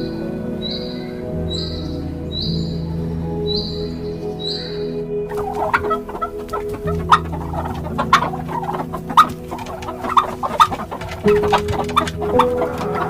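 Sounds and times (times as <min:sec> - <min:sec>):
background music: 0:00.0 - 0:13.0
chickens clucking: 0:05.3 - 0:13.0.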